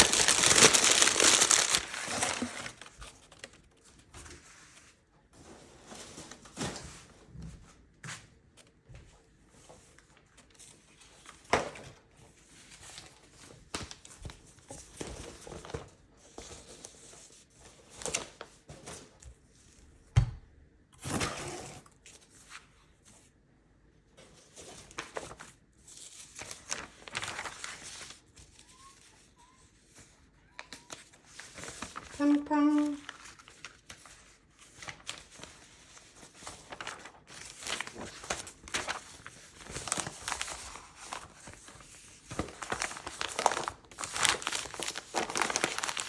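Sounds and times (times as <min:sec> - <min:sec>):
wrapping crinkling and tearing: 0:00.0 - 0:03.6, 0:24.9 - 0:25.5, 0:26.2 - 0:29.2, 0:30.5 - 0:46.0.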